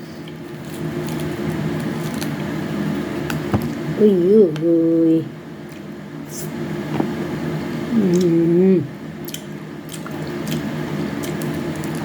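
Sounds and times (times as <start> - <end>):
person humming mmm: 7.9 - 8.9
wet chewing of orange: 9.3 - 12.0.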